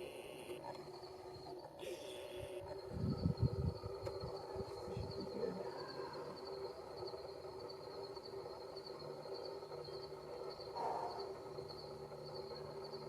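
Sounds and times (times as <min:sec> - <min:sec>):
faint low hum: 0:00.0 - 0:13.0
insects chirping trill: 0:00.0 - 0:13.0.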